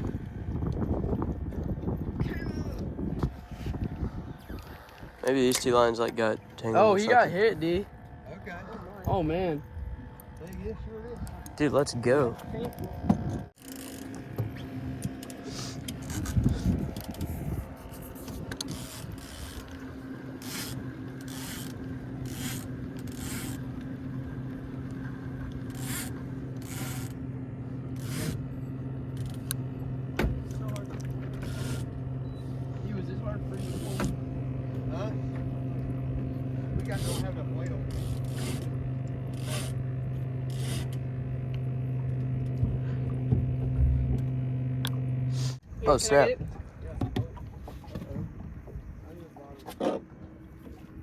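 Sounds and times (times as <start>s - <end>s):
steady low hum: 0.0s - 51.0s
short rasping scrapes: 25.7s - 27.2s, 28.0s - 28.4s, 37.9s - 38.7s
short scraping sounds: 45.3s - 45.6s.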